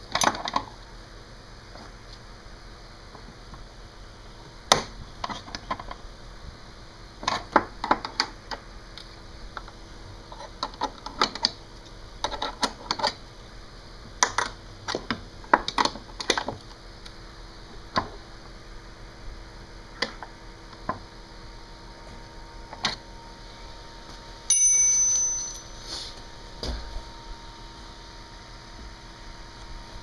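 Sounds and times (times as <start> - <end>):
metal hand tools clinking: 24.5 - 25.8.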